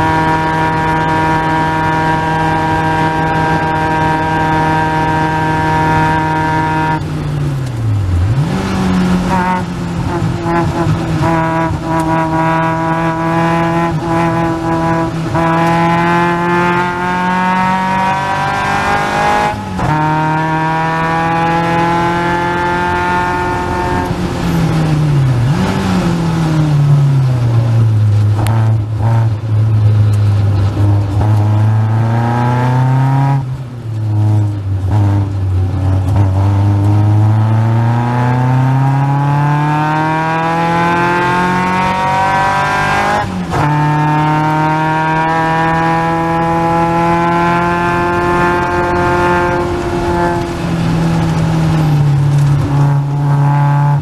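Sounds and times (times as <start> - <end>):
racing car engine revving: 0.0 - 54.0.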